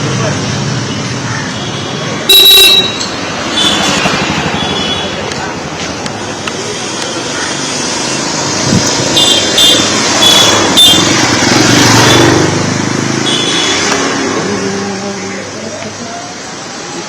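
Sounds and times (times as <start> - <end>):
motor vehicle passing: 3.1 - 15.2.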